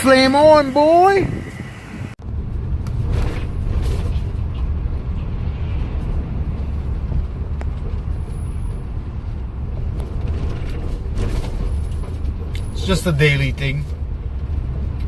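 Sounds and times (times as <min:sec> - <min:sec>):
engine and road rumble: 0:00.0 - 0:15.0.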